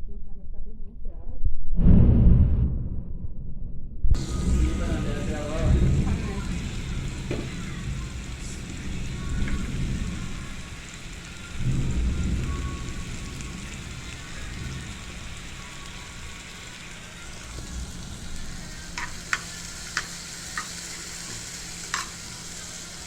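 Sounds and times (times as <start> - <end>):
low thump: 1.8 - 4.2
oil sizzling in a pot: 4.2 - 23.0.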